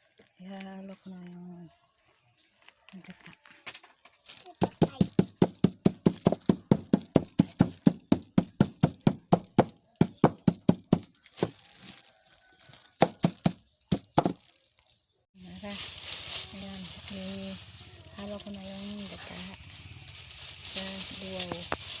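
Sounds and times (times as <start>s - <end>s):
utensil knocking: 4.6s - 11.5s, 13.0s - 14.4s.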